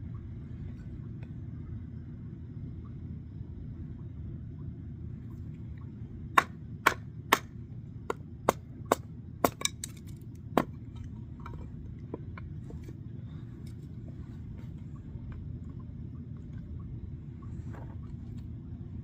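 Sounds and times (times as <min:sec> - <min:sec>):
steady low rumble: 0:00.0 - 0:19.0
axe chopping kindling: 0:06.4 - 0:07.5, 0:08.1 - 0:10.8
wood pieces knocking: 0:08.5 - 0:13.0.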